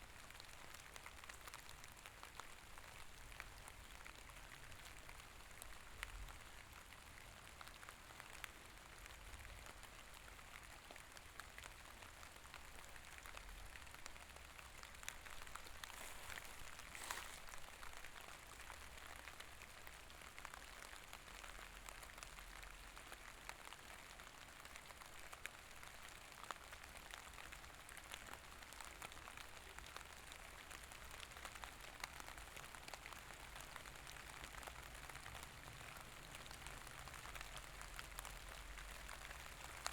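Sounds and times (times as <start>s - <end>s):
soft steady rain: 0.0s - 39.9s.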